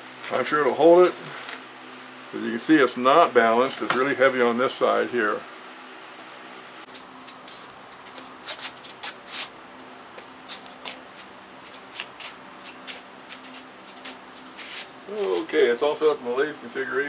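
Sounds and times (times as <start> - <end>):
handling scuffs and rustles: 6.8 - 15.6
hiss: 14.6 - 14.9.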